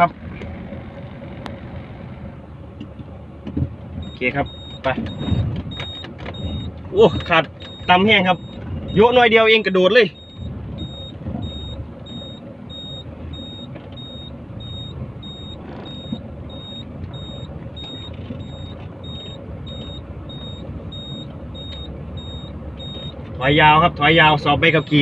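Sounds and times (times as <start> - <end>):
truck engine rumble: 0.0 - 25.0
reversing alarm beeping: 4.0 - 23.2, 24.7 - 25.0.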